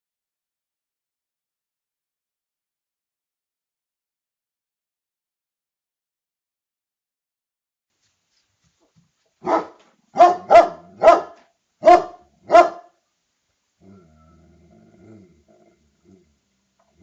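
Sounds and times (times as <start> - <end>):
dog barking sharply: 9.4 - 13.0.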